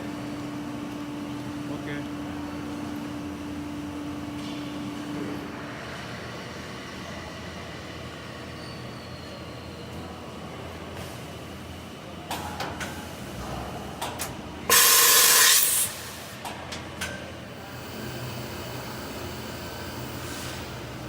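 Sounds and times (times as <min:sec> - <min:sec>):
compressed air hissing: 0:14.7 - 0:16.2.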